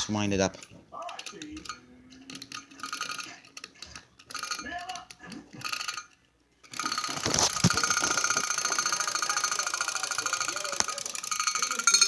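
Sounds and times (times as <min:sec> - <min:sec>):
toy drum tapping rattle: 0:06.7 - 0:12.0.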